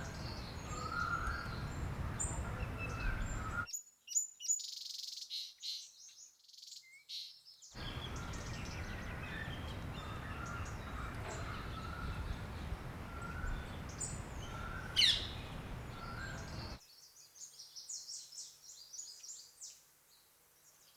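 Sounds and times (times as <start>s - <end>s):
steady rushing noise: 0.0s - 3.6s, 7.8s - 16.8s
birds chirping: 0.0s - 3.7s, 7.8s - 16.8s.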